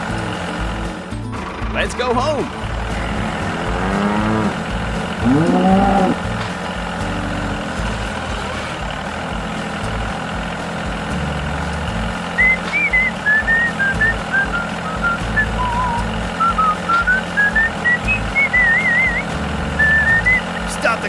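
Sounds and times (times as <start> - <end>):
repeating low beat: 0.0 - 21.0
vehicle-like hum: 0.0 - 21.0
whistled tune: 0.0 - 21.0
cow mooing: 3.5 - 6.3.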